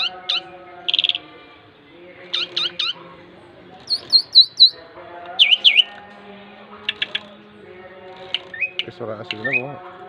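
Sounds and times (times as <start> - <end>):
young starling chirping: 0.0 - 1.3, 2.3 - 3.0, 3.8 - 4.8, 5.4 - 5.9.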